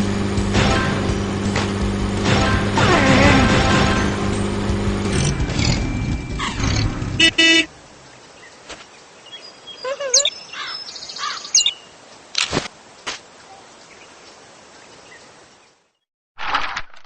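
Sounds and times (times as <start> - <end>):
cartoon vehicle sound: 2.0 - 7.7
birds chirping: 5.6 - 12.1
car horn toots: 6.4 - 7.7.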